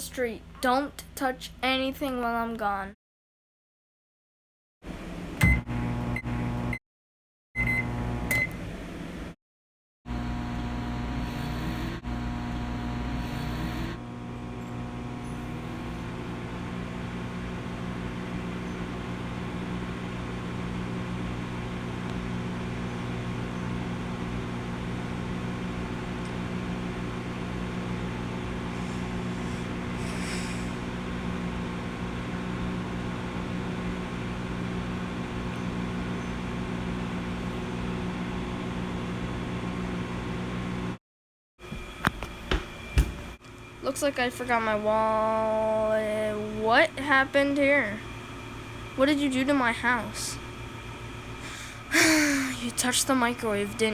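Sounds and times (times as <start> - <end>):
microwave running hum: 4.9 - 6.8, 7.6 - 9.4, 10.1 - 41.0, 41.6 - 53.9
microwave keypad beeps: 7.6 - 8.6.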